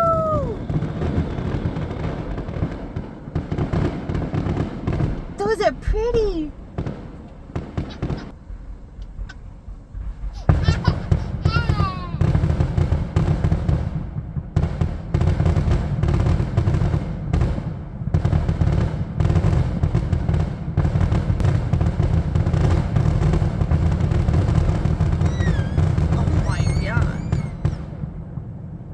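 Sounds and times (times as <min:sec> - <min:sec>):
fireworks bangs and crackles: 0:00.0 - 0:28.9
falling firework whistles: 0:24.8 - 0:28.0.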